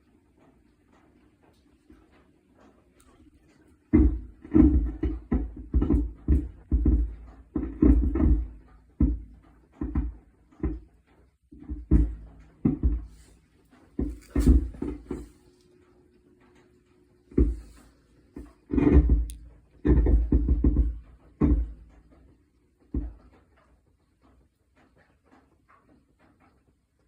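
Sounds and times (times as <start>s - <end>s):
low knocks from a car: 18.7s - 22.0s.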